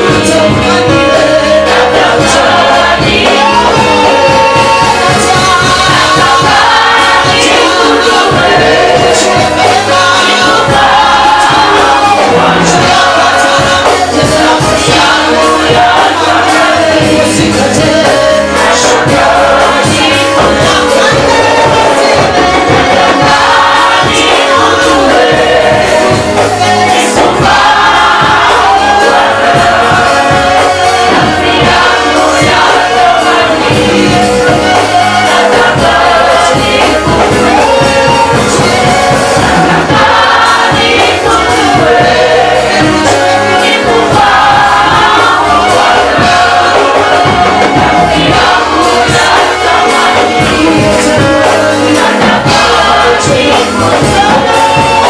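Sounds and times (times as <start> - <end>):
band playing even beat: 0.0 - 55.0
choir singing: 0.0 - 55.0.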